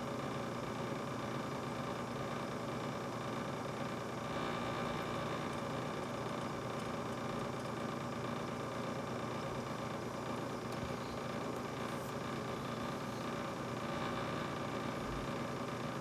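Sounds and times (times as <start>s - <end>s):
refrigerator humming: 0.0s - 16.0s.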